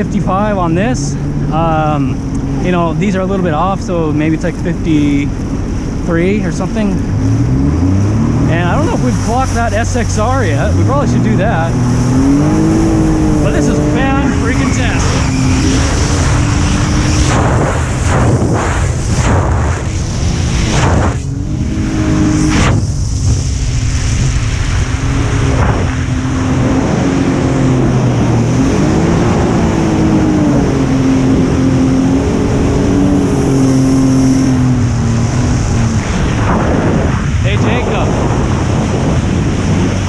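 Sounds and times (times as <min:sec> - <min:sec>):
personal watercraft engine running: 0:00.0 - 0:40.0
water rushing: 0:00.0 - 0:40.0
wind: 0:00.0 - 0:40.0.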